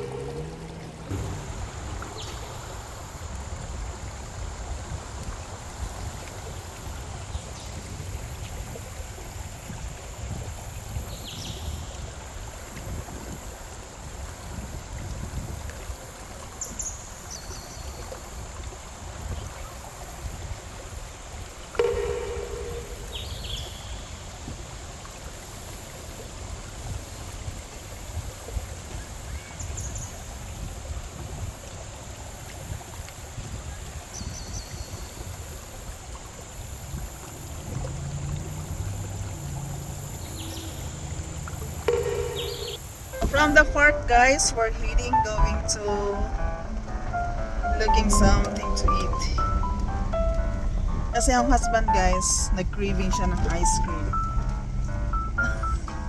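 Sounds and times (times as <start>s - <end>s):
ringing knock: 21.8s - 23.4s, 41.9s - 43.6s.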